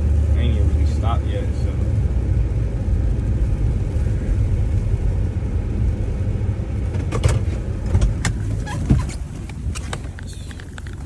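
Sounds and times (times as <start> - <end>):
vehicle rumbling through snow: 0.0 - 11.0
sharp clicks and knocks: 6.9 - 11.0.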